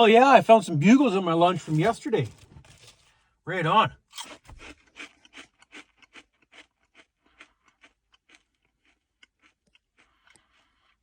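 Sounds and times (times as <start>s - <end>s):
crunchy snacks being chewed: 4.2s - 11.0s.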